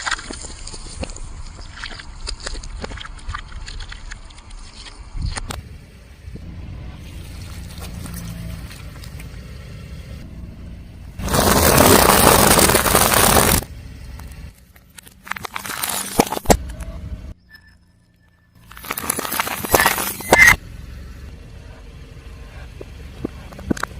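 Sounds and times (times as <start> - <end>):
crackles and snaps: 0.0 - 5.6, 11.2 - 16.9, 18.6 - 20.6
car tyre crushing objects: 11.2 - 16.8, 18.6 - 20.6.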